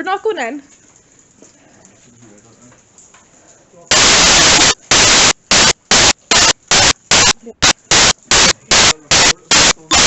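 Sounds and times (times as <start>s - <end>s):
bursts of hissing static: 3.9s - 10.0s.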